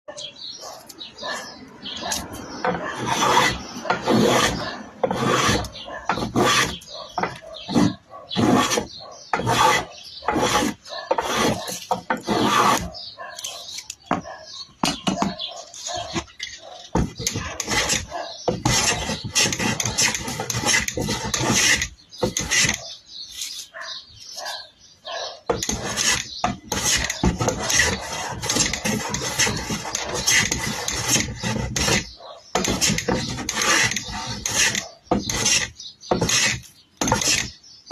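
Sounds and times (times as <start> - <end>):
hand plane shaving wood: 2.1 - 14.3, 16.9 - 22.8, 25.5 - 37.6.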